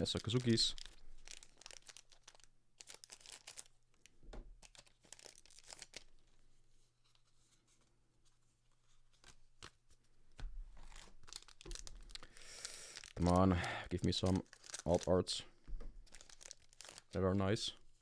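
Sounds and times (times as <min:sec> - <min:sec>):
wrapper crinkling and tearing: 0:00.0 - 0:06.4, 0:10.8 - 0:15.4, 0:16.0 - 0:17.2.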